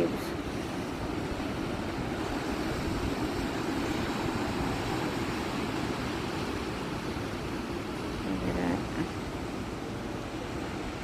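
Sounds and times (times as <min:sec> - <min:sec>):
ocean waves breaking: 0:00.0 - 0:11.0
wind buffeting microphone: 0:00.8 - 0:08.3.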